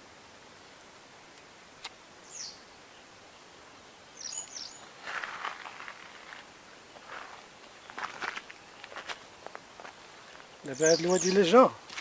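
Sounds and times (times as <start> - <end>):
faint rustling: 4.8 - 10.6
footstep on loose ground: 4.9 - 10.6.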